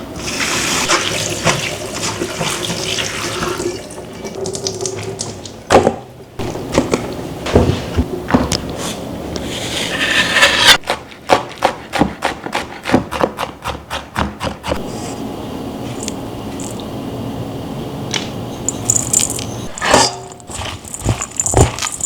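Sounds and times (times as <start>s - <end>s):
knife scraping cutting board: 8.7s - 15.2s, 19.6s - 22.0s
knife chopping on wooden board: 10.8s - 14.9s.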